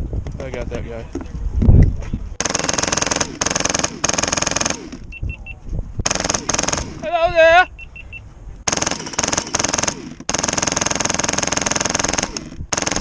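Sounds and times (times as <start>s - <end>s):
airsoft gun full-auto bursts: 2.4s - 5.0s, 6.0s - 7.0s, 8.7s - 13.0s.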